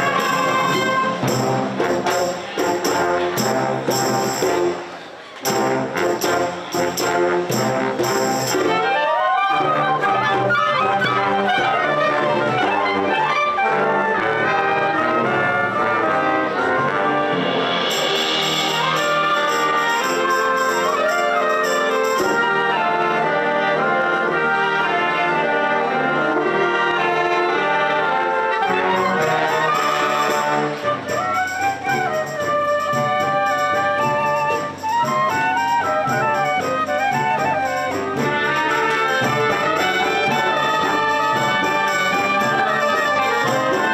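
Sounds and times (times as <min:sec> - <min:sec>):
percussion strikes: 0:00.0 - 0:09.1, 0:16.0 - 0:23.4, 0:28.7 - 0:43.9
brass instrumental music: 0:00.0 - 0:43.9.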